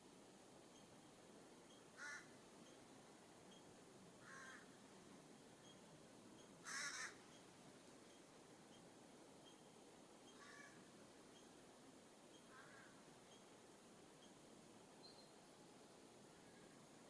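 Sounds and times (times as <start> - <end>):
small birds chipping: 0.6 - 17.0
jay harsh rasping calls: 6.6 - 7.2.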